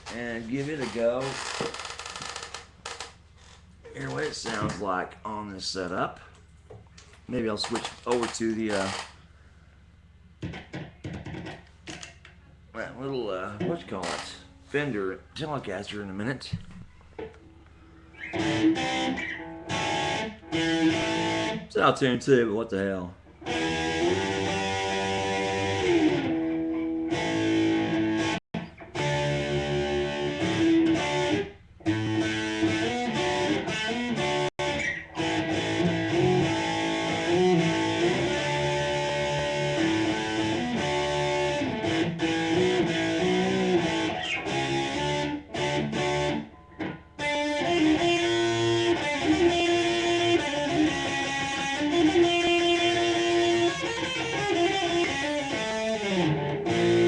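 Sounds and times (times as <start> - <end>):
distorted electric guitar melody: 10.4 - 12.1, 17.2 - 21.7, 23.2 - 57.0.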